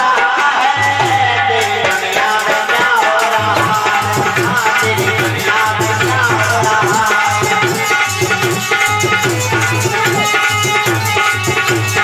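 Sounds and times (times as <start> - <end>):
tabla drumming: 0.0 - 12.0
instrumental melody line: 0.9 - 12.0.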